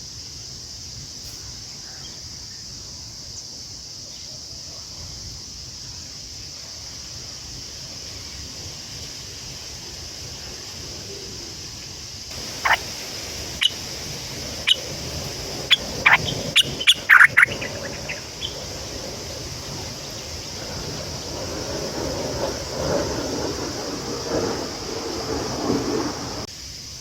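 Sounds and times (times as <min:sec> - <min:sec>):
high insect-like hiss: 0:00.0 - 0:27.0
bird calling: 0:12.3 - 0:26.4.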